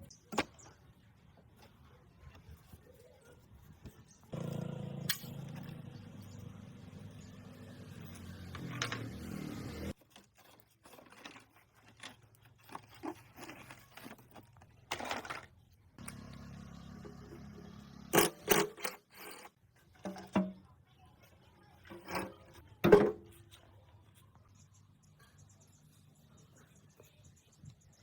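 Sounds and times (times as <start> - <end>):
scraping and clicking handling noises: 8.1 - 16.4, 18.1 - 24.7.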